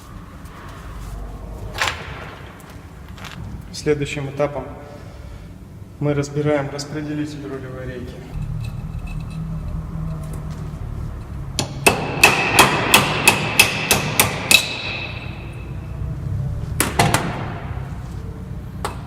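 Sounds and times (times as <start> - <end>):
low hum: 0.0 - 12.9.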